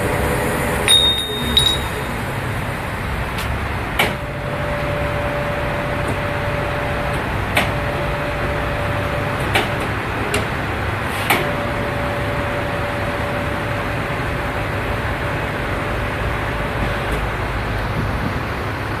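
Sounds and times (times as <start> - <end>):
whining tone: 0.0 - 3.2.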